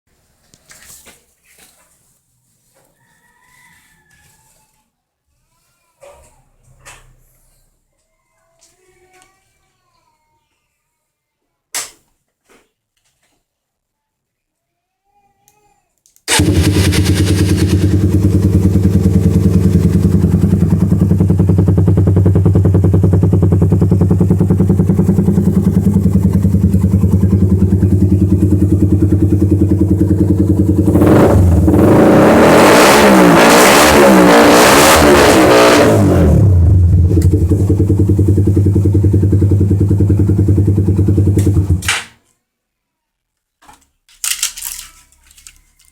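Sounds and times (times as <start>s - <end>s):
motorcycle idling and revving: 16.3s - 41.8s.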